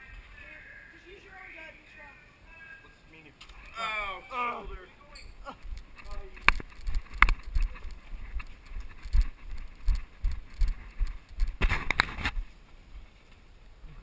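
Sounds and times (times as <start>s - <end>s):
crackling and rattling on microphone: 5.2s - 13.4s
gear jostling against camera: 5.4s - 12.5s
footsteps with thumps: 5.5s - 12.5s.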